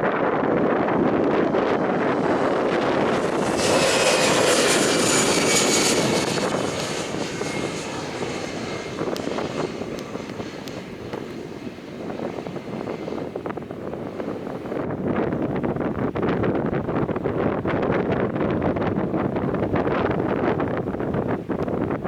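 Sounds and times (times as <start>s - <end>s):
jet airliner passing: 0.0s - 16.4s.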